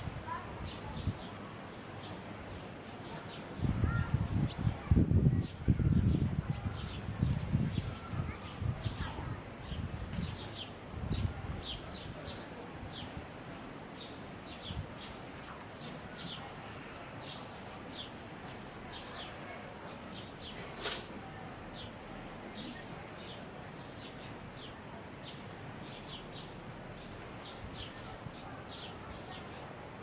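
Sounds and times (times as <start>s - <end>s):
small birds chirping: 0.3s - 29.8s
cat sneezing: 20.8s - 21.2s.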